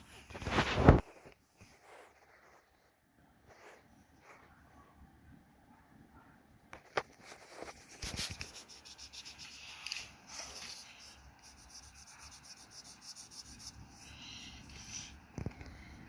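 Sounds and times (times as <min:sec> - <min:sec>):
pencil scratching on paper: 0:07.3 - 0:15.3.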